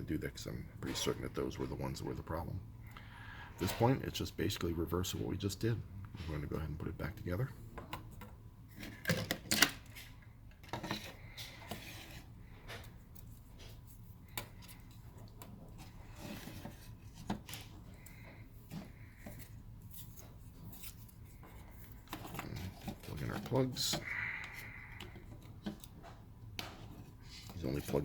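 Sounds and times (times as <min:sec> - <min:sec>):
plastic parts clicking and rubbing: 0:07.8 - 0:28.0.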